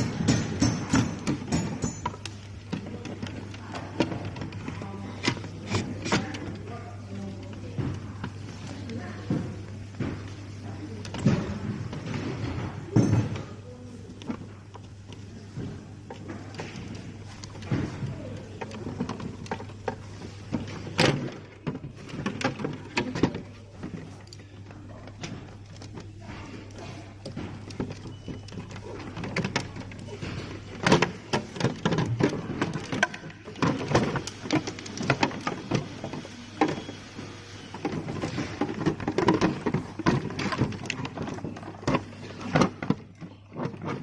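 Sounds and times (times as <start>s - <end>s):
tools clicking and rattling: 0.0s - 6.6s.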